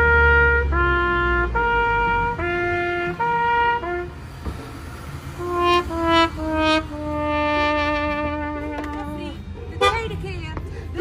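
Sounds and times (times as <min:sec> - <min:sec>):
brass two-tone siren figure: 0:00.0 - 0:04.2.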